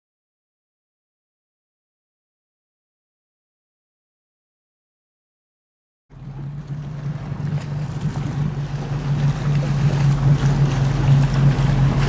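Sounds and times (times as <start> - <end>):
boat engine humming: 6.1 - 12.0
water rushing past hull: 6.1 - 12.0
wind buffeting microphone: 6.2 - 12.0.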